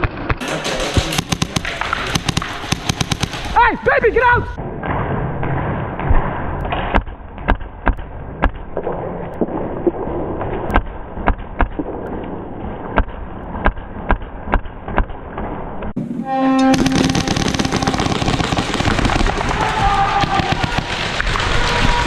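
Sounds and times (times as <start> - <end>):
pellet impacts: 0.0 - 4.0, 16.7 - 22.0
airsoft gun shots: 0.4 - 3.8, 16.7 - 21.4
background din: 0.4 - 9.5, 10.7 - 22.0.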